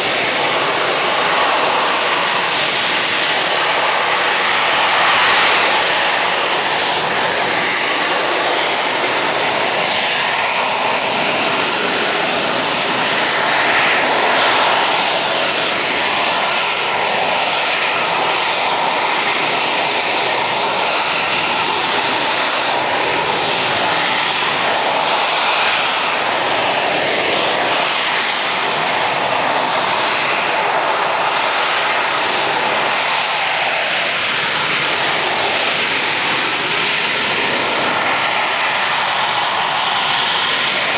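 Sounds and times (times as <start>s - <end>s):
jet engine roar: 0.0s - 40.9s.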